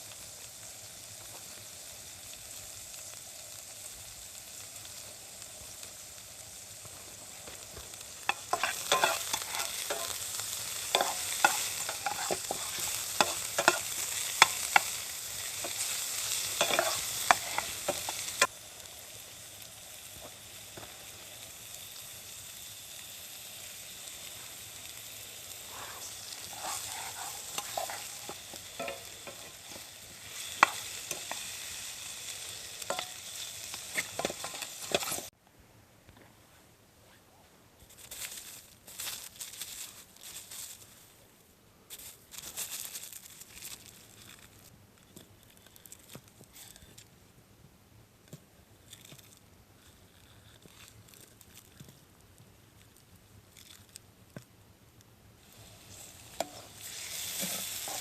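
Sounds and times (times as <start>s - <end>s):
food sizzling in a hot pan: 0.0s - 35.4s, 55.4s - 58.0s.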